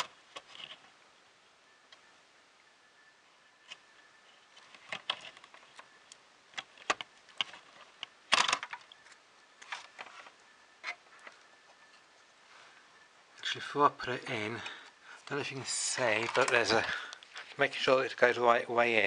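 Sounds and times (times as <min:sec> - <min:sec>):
plastic rattling: 0:04.6 - 0:05.9, 0:06.5 - 0:11.4, 0:15.7 - 0:17.8.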